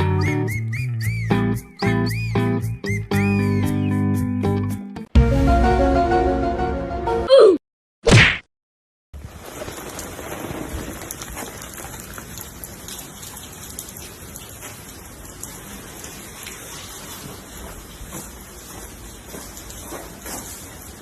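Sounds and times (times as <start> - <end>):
rain patter: 9.2 - 21.0.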